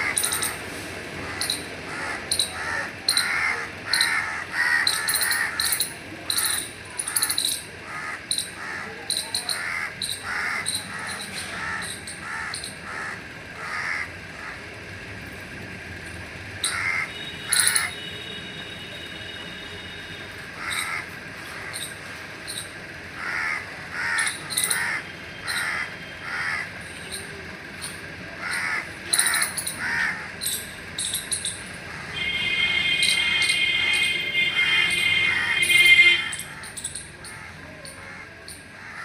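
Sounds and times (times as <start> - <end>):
steady outdoor hiss: 0.0 - 39.0
crows cawing: 1.2 - 14.8, 16.6 - 18.0, 20.6 - 22.0, 22.6 - 26.9, 28.4 - 30.5, 31.8 - 39.0.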